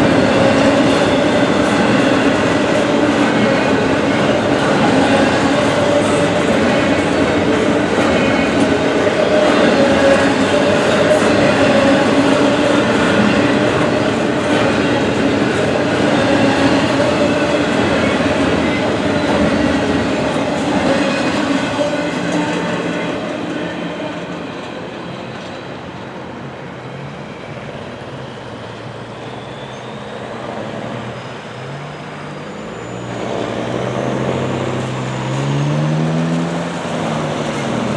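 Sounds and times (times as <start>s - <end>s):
freight train wheels on rails: 0.0s - 37.9s
vehicle engine accelerating: 30.7s - 37.9s.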